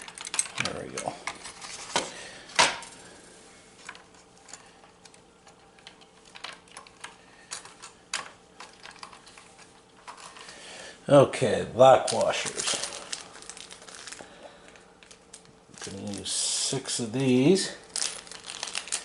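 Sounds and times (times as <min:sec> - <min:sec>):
metal washers clinking and clicking: 0:00.0 - 0:01.4.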